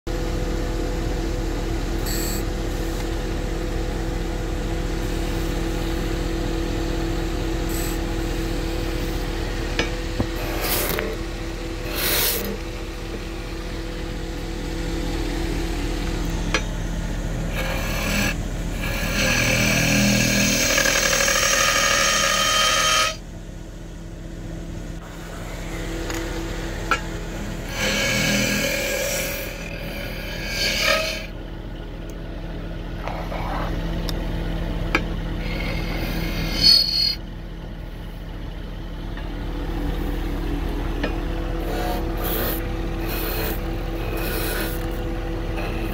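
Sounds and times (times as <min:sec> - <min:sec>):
lathe motor hum: 0:00.1 - 0:45.9
turning tool cutting wood: 0:07.6 - 0:13.3, 0:16.0 - 0:23.2, 0:26.8 - 0:31.4, 0:35.4 - 0:37.2, 0:41.6 - 0:45.9.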